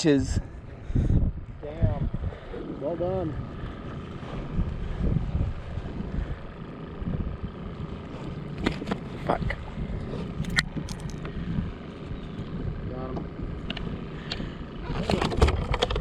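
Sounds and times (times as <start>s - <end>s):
wind rumbling on microphone: 0.2s - 16.0s.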